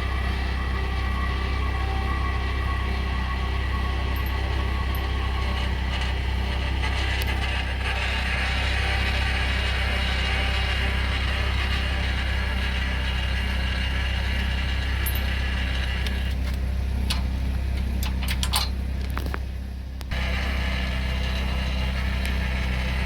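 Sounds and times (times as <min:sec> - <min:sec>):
electric jack motor running: 0:00.0 - 0:23.0
truck engine idling: 0:00.0 - 0:23.0
metal clicks and knocks: 0:16.0 - 0:19.4.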